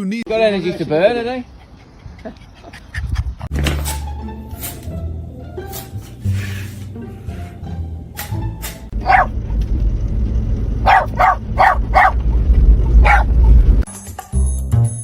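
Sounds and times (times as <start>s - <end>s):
heavy low rumble: 7.0s - 13.9s
dog barking: 8.9s - 9.4s, 10.8s - 12.2s, 13.0s - 13.3s.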